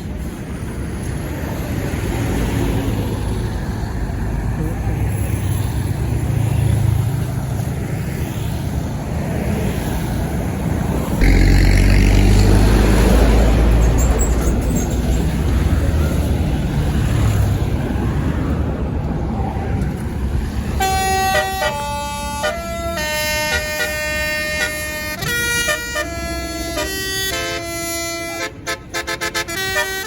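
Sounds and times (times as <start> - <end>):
bus engine and road noise: 0.0 - 30.0
musical air horn playing a tune: 11.2 - 13.1, 20.8 - 30.0.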